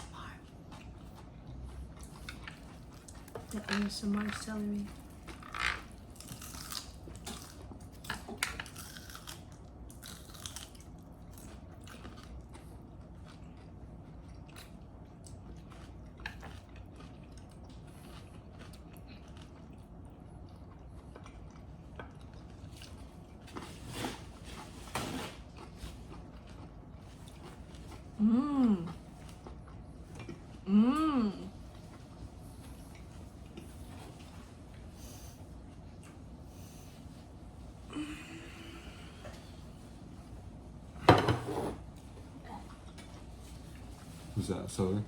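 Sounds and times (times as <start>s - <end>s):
celery crunching while chewed: 4.5s - 28.2s, 28.8s - 30.6s.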